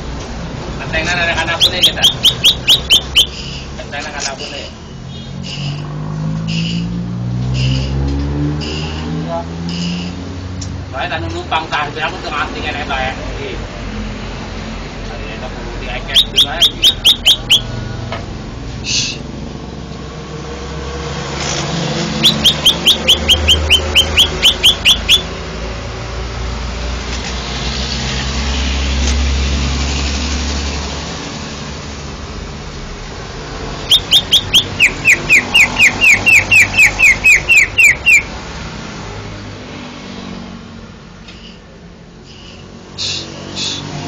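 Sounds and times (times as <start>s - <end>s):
bird singing down-slurred notes: 1.4s - 3.6s, 16.0s - 17.8s, 22.1s - 25.3s, 33.8s - 38.3s.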